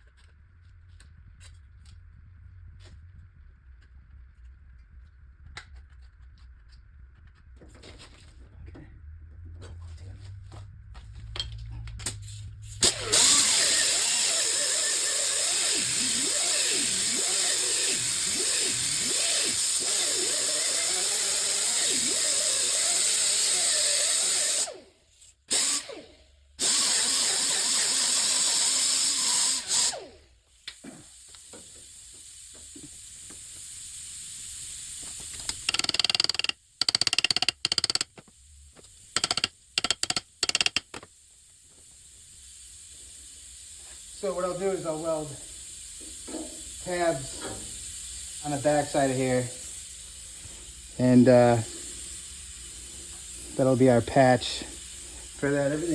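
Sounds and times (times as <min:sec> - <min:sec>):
power tool running: 0:12.6 - 0:41.1, 0:41.7 - 0:55.9
short bursts: 0:35.0 - 0:38.2.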